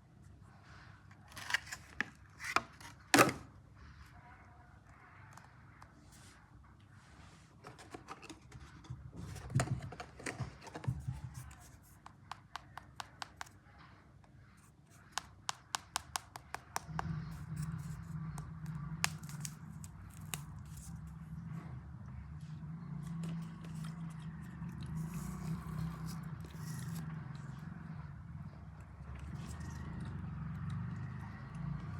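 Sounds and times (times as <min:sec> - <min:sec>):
packaging crinkling and tearing: 0:01.3 - 0:02.6, 0:19.0 - 0:21.0.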